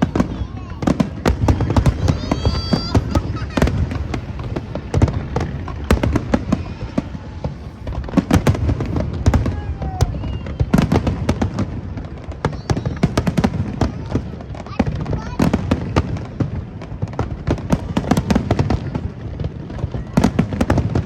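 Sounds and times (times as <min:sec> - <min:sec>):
low booms: 0:00.0 - 0:14.4
fireworks bangs and crackles: 0:00.0 - 0:21.0.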